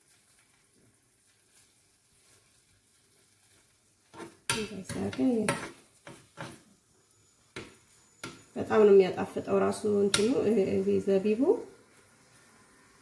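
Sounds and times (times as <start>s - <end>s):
sizzle of frying: 0.0s - 13.0s
utensil scraping a pan: 3.4s - 6.8s.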